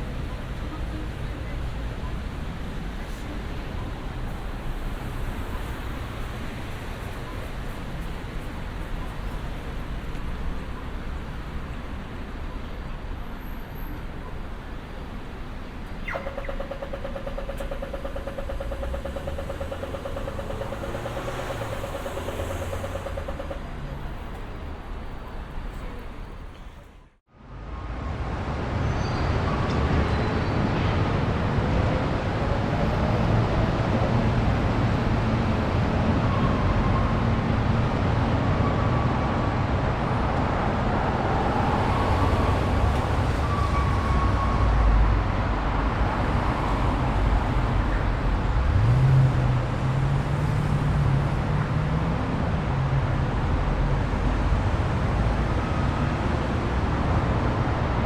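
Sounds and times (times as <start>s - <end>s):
road noise from passing cars: 0.0s - 58.0s
vehicle engine pulling away: 17.5s - 24.2s, 46.9s - 55.4s.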